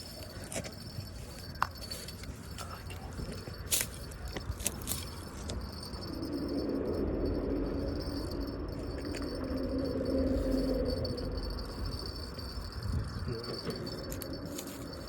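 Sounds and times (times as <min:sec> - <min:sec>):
low rushing noise: 0:05.0 - 0:14.4.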